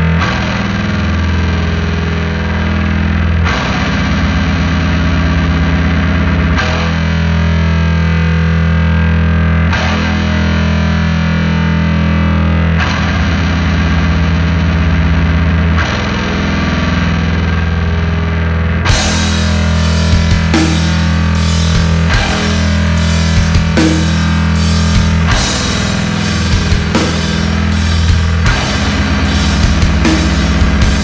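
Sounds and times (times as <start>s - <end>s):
distorted electric guitar riff: 0.0s - 31.0s.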